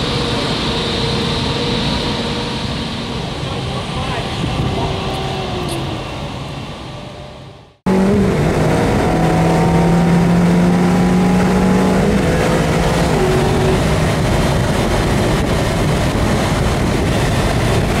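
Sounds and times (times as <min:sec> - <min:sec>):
car engine running at held revs: 0:07.9 - 0:18.0.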